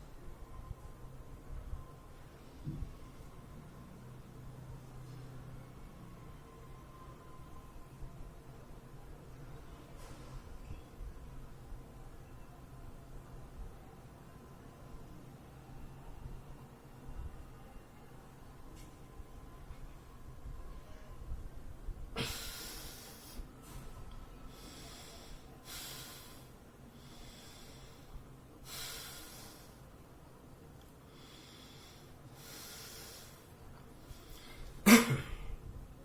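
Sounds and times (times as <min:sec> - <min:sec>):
room noise with low rumble: 0:00.0 - 0:36.0
person breathing through nose: 0:22.2 - 0:23.5, 0:24.5 - 0:29.8, 0:31.1 - 0:33.5.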